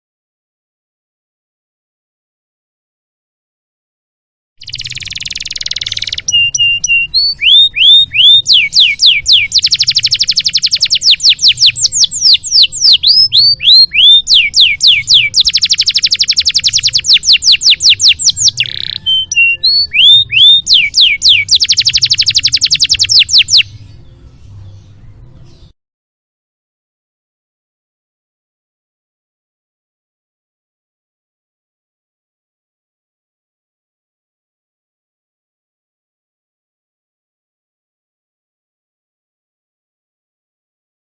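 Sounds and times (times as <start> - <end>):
canary singing: 4.6 - 25.8.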